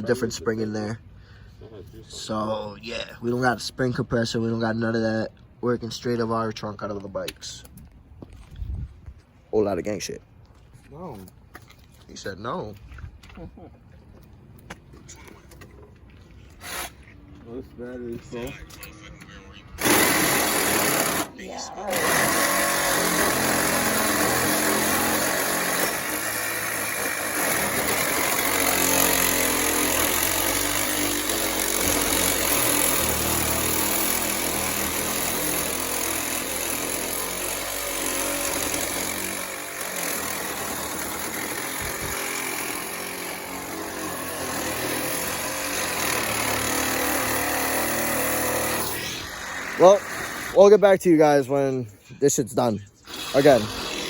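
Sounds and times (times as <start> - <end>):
cordless saw cutting steel: 16.6 - 17.0, 19.8 - 50.6, 53.1 - 54.0.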